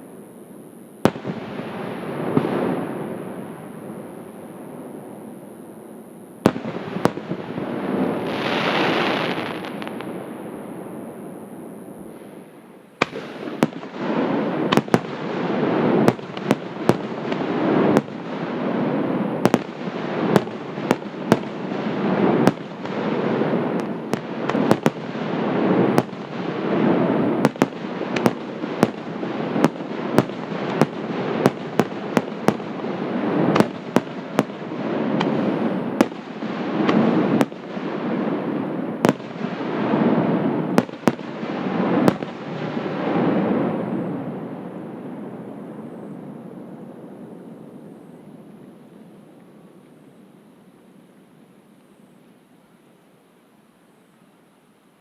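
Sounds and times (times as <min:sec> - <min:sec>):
fireworks bangs: 0:01.0 - 0:04.0, 0:06.4 - 0:10.6, 0:13.0 - 0:45.0.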